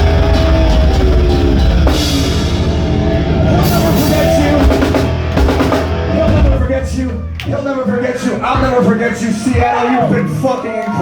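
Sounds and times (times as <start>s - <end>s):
drums and cymbal crashes: 0.0s - 6.9s
distorted guitar chords: 0.0s - 7.4s.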